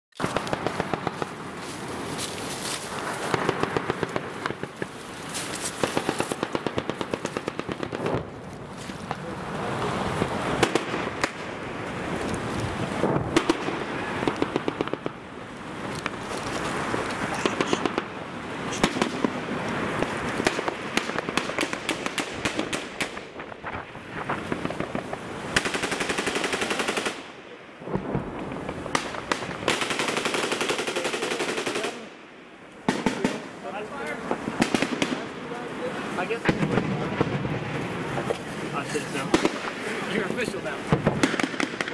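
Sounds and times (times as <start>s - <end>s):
automatic gunfire bursts: 25.6s - 27.2s, 29.3s - 32.0s
single gunshots: 32.9s - 33.5s, 39.2s - 39.8s, 40.9s - 41.9s.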